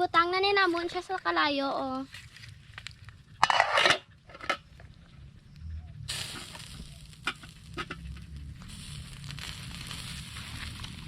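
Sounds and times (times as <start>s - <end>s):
fire crackling and hissing: 0.6s - 3.5s, 4.1s - 11.0s
cooking pot clattering and scraping: 2.9s - 4.8s, 7.2s - 8.3s.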